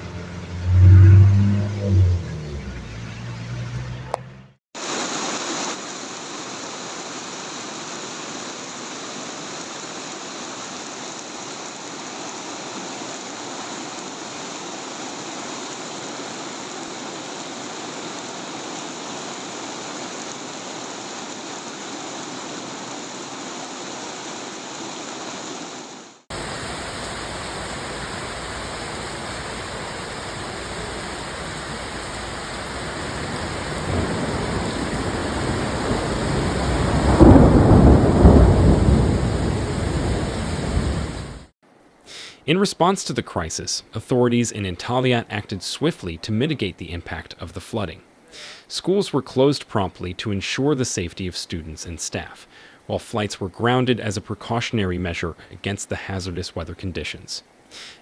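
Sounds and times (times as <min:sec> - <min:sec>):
deeper rush of water: 0:00.6 - 0:03.0, 0:04.8 - 0:41.5
rushing water: 0:04.8 - 0:41.5.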